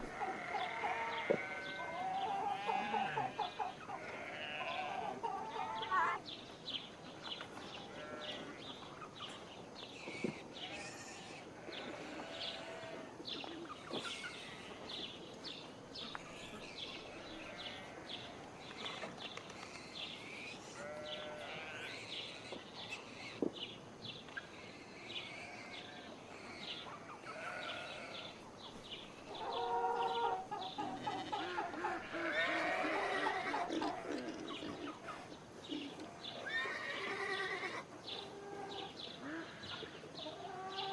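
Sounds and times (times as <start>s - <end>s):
livestock bleating: 0.0s - 6.2s, 7.9s - 8.6s, 10.6s - 13.1s, 16.3s - 18.4s, 20.7s - 22.1s, 27.1s - 28.4s, 29.6s - 34.7s, 36.0s - 37.9s
small birds chirping: 0.0s - 40.9s.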